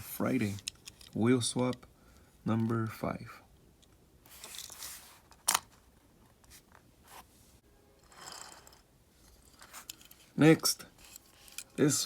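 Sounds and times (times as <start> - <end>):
rustling and scraping of objects: 0.0 - 1.3, 4.2 - 12.0.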